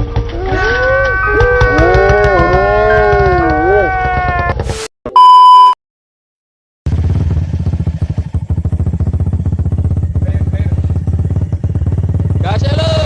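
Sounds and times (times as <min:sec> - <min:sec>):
motorcycle engine running: 0:00.0 - 0:04.5, 0:06.9 - 0:13.0
loud steady beep: 0:05.2 - 0:05.8.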